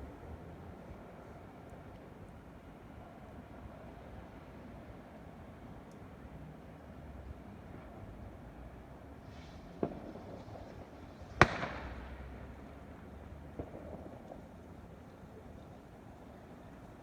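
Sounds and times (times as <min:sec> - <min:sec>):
fireworks bangs echoing: 0:11.4 - 0:12.5.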